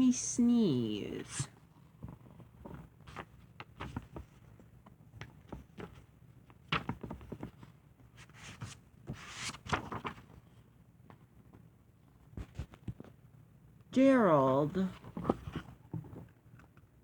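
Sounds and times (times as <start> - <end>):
book pages turning: 6.7 - 10.4
paper rustling: 6.7 - 10.4.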